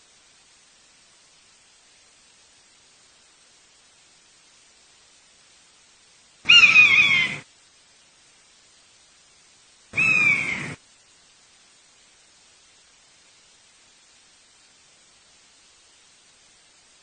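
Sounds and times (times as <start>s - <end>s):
buzzard mewing calls: 6.5s - 7.4s, 10.0s - 10.8s.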